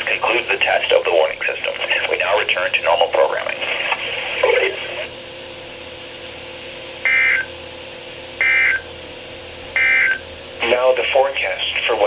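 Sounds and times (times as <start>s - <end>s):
radio hiss and hum: 0.0s - 5.4s, 9.8s - 12.0s.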